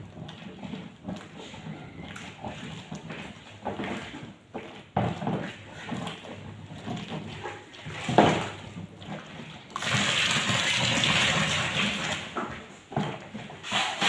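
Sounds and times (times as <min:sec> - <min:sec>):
water pouring: 0:05.4 - 0:12.4.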